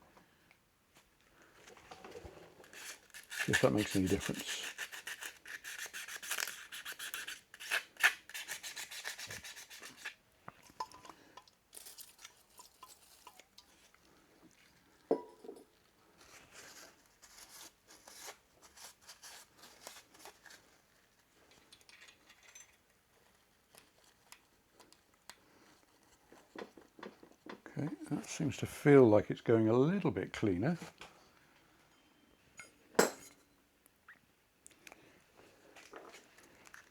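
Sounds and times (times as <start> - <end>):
sandpaper rubbing on metal: 2.7 - 10.1.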